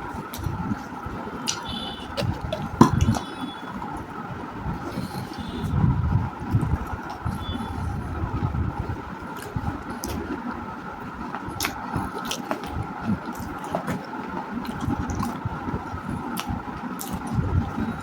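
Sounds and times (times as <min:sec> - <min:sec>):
moist chewing: 0:11.3 - 0:15.4.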